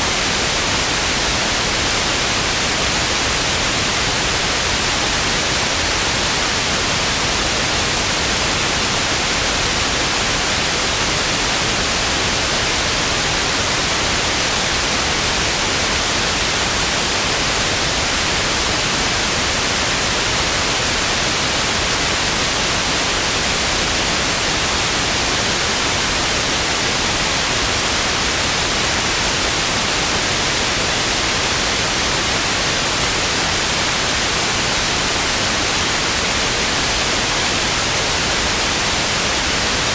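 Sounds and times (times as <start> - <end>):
television static hiss: 0.0 - 39.9.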